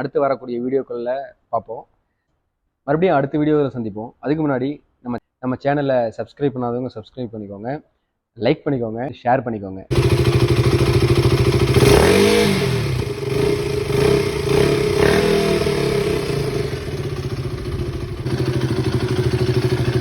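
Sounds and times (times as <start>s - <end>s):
engine revving: 9.9s - 20.0s
motorcycle engine idling: 9.9s - 20.0s.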